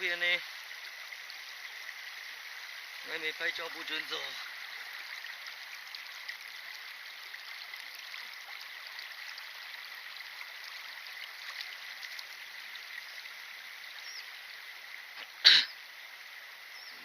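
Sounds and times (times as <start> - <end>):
running water hiss: 0.0 - 17.0.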